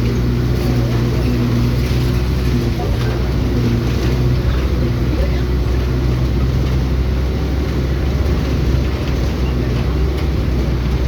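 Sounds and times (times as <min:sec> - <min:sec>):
vehicle engine and road noise: 0:00.0 - 0:11.0.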